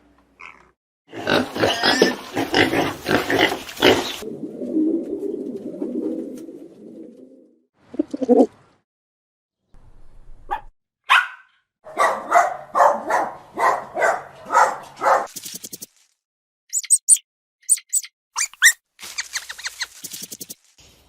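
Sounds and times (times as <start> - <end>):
dog barking: 10.5 - 15.3
high-pitched chirps: 16.7 - 20.6.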